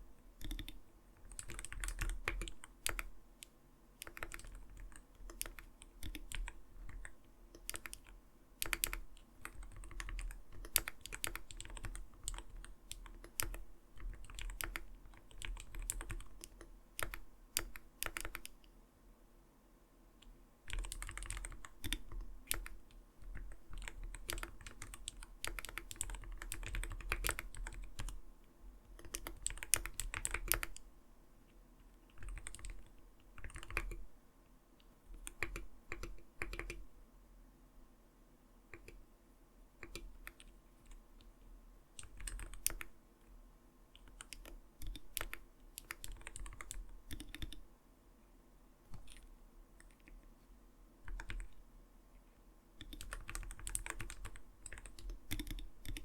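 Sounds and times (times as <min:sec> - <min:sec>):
mechanical keyboard typing: 0:00.4 - 0:18.7, 0:20.7 - 0:28.2, 0:28.9 - 0:30.8, 0:32.1 - 0:34.0, 0:35.1 - 0:36.8, 0:38.7 - 0:39.0, 0:39.8 - 0:41.0, 0:42.0 - 0:42.9, 0:44.0 - 0:47.6, 0:51.0 - 0:51.6, 0:52.8 - 0:56.0.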